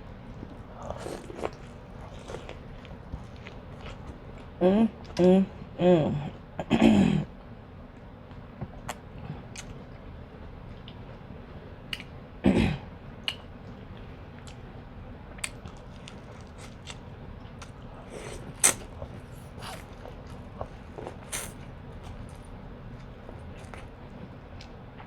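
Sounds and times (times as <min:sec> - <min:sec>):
chewing and wet mouth clicks: 0:11.9 - 0:12.1, 0:13.2 - 0:14.6, 0:15.3 - 0:25.0.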